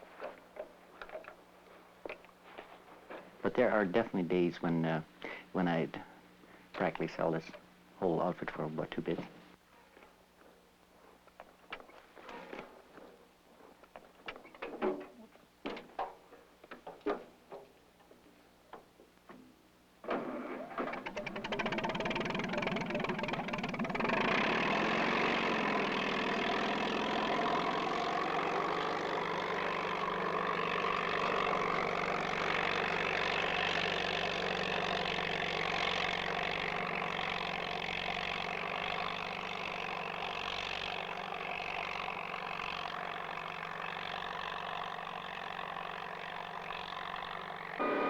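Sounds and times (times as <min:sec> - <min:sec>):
heavy engine running: 0:20.6 - 0:48.0.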